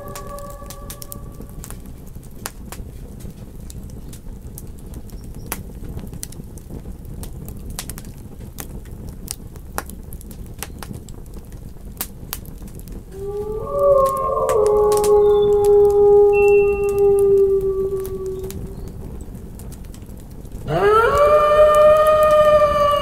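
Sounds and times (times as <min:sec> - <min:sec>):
burning wood popping and snapping: 0:00.0 - 0:16.3, 0:16.9 - 0:23.0
low rumble of fire: 0:00.0 - 0:23.0.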